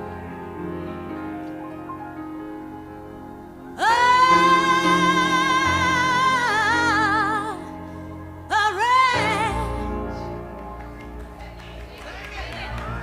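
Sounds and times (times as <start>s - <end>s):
soft low accompaniment: 0.0s - 13.0s
high solo singing voice: 3.8s - 7.8s.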